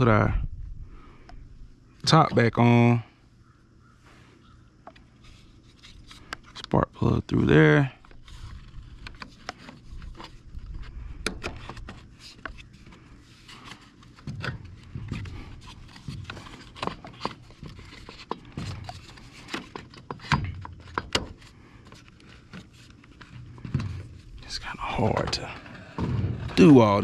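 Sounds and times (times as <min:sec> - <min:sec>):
engine parts clicking and scraping: 0:08.0 - 0:27.0.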